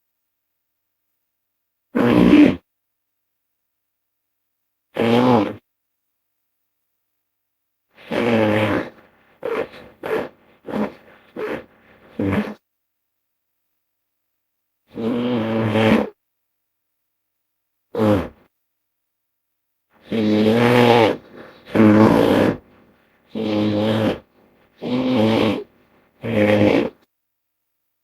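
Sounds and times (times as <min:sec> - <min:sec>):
deep creature calls: 0:08.0 - 0:12.6, 0:18.0 - 0:18.4, 0:20.0 - 0:22.6, 0:23.3 - 0:27.0.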